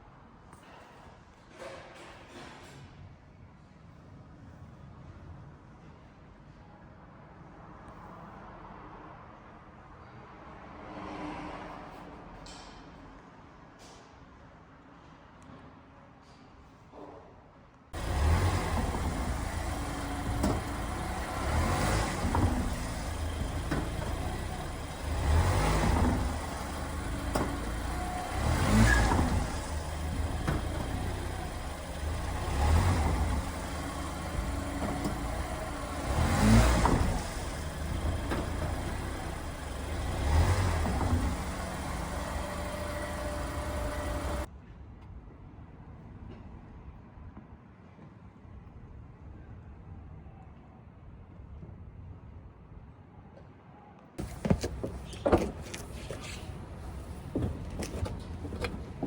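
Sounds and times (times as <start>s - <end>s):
car road and engine noise: 18.0s - 44.5s, 54.2s - 59.0s
suspension thumps over bumps: 18.0s - 44.5s, 54.2s - 59.0s.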